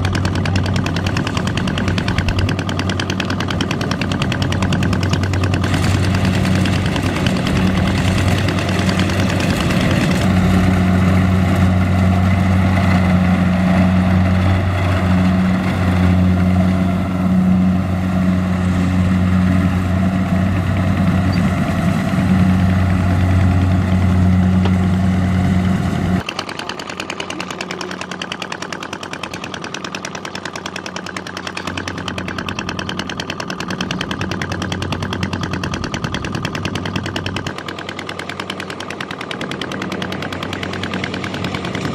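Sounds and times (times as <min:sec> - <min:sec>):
harvester engine running: 0:00.0 - 0:41.9.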